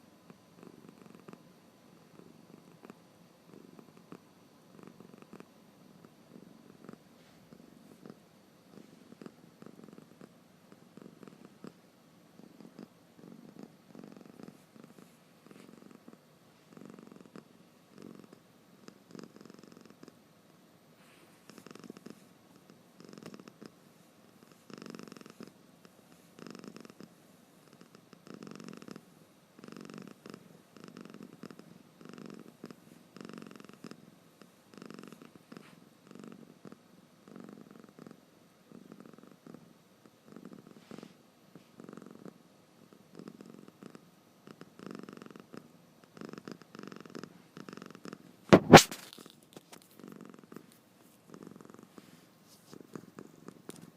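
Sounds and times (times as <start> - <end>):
cat snoring: 0.0 - 11.8, 12.4 - 20.2, 21.0 - 48.8, 51.2 - 53.9
sharp knock: 48.5 - 49.1.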